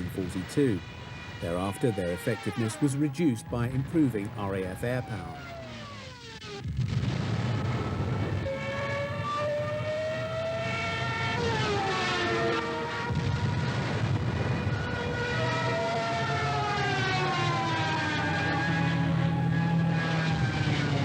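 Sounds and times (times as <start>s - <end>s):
propeller aircraft engines droning: 0.0s - 6.6s, 7.7s - 21.0s.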